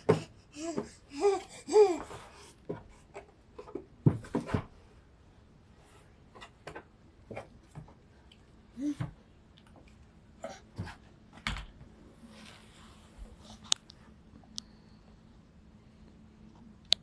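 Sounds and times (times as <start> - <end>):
baby cooing: 0.1 - 2.2.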